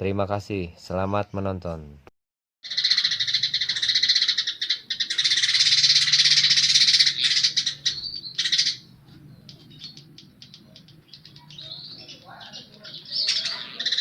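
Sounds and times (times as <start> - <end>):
bird chirps: 2.6 - 14.0
bird singing chattering song: 2.6 - 14.0.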